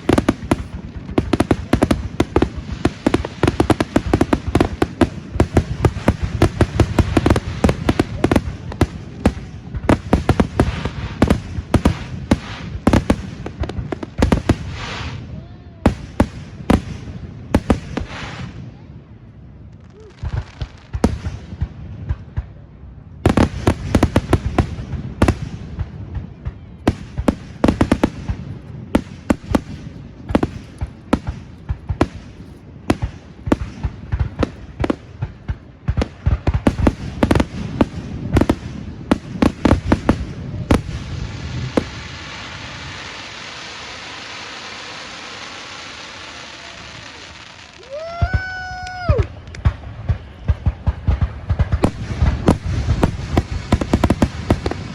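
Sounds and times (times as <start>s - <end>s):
steady hiss: 0.0s - 22.0s, 27.0s - 48.7s
fireworks bangs: 0.0s - 54.9s.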